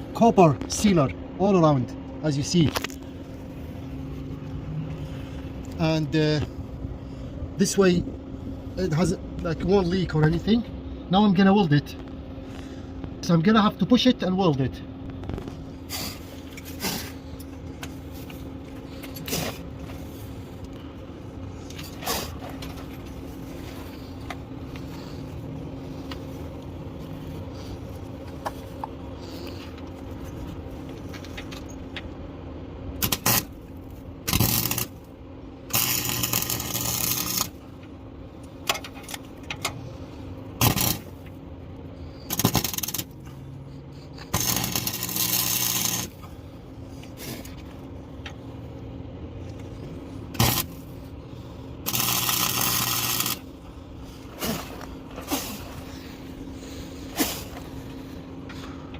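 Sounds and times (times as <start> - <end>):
welding arc crackle: 33.0 - 33.6, 34.2 - 35.1, 35.7 - 37.6, 40.6 - 41.2, 42.3 - 43.2, 44.2 - 46.2, 50.4 - 50.8, 51.8 - 53.5.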